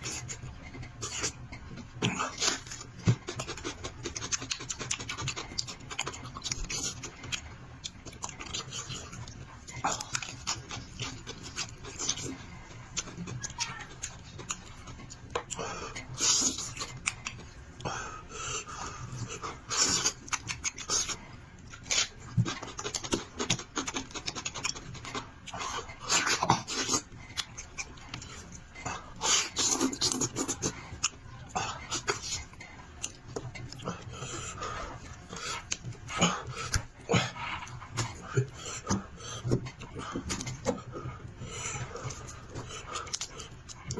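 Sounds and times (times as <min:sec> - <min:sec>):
chewing and gnawing meat: 0:00.0 - 0:43.9.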